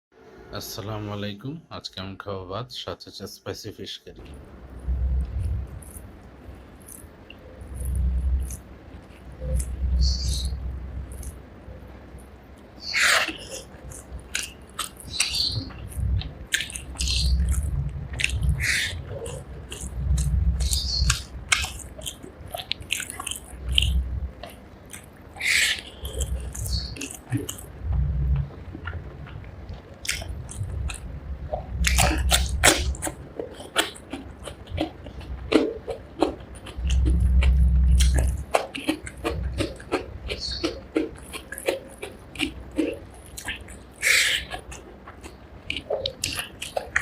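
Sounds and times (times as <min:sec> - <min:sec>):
low thumping: 0:04.2 - 0:06.6, 0:15.6 - 0:22.6, 0:26.2 - 0:33.5
wet chewing and lip smacks: 0:06.7 - 0:11.4, 0:12.1 - 0:47.0
low thuds: 0:27.3 - 0:33.3.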